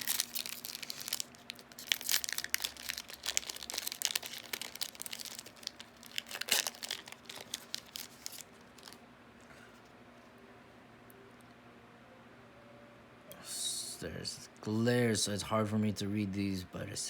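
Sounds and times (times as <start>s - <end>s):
plastic wrapper tearing and crinkling: 0.0s - 9.0s.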